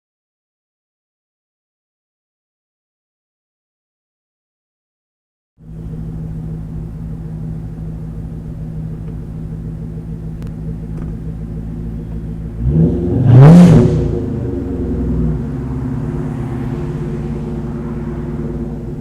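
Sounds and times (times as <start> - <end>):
car engine idling: 5.6 - 19.0
engine revving: 10.4 - 19.0.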